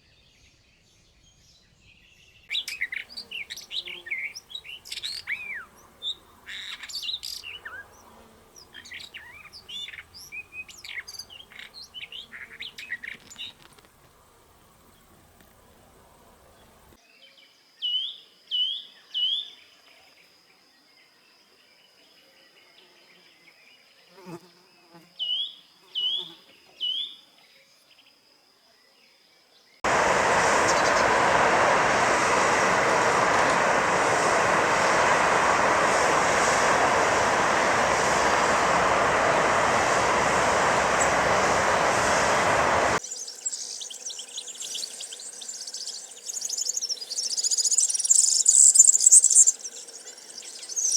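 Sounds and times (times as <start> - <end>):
faint high insect tone: 0.0 - 50.9
loud even buzzing: 29.9 - 43.0.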